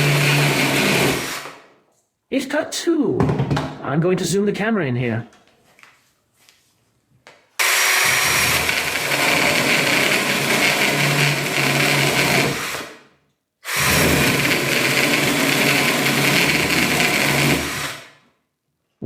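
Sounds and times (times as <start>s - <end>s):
drill driving chainsaw attachment: 0.0s - 1.6s, 7.6s - 13.0s, 13.6s - 18.2s.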